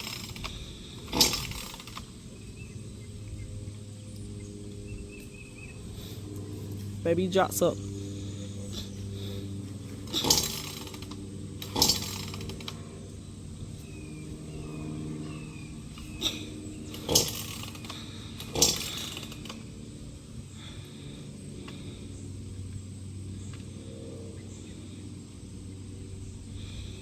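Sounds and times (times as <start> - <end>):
chainsaw revving bursts: 0.0 - 2.6, 7.0 - 22.1
chainsaw idling: 0.0 - 3.1, 5.9 - 23.6.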